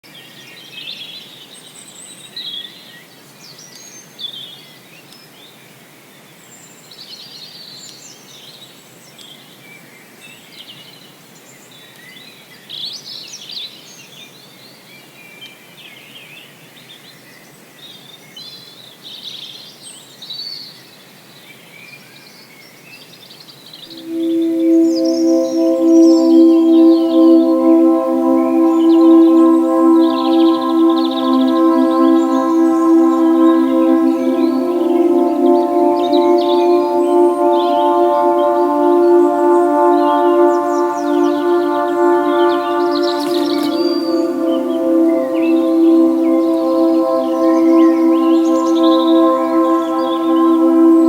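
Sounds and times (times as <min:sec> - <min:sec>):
music with long held tones: 0:23.9 - 0:51.0.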